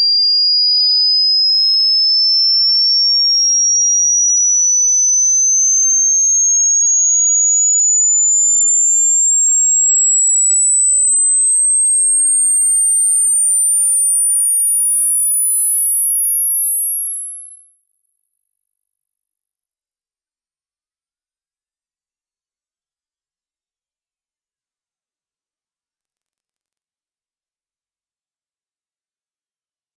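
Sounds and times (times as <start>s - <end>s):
sine test tone sweeping upward: 0.0s - 24.6s.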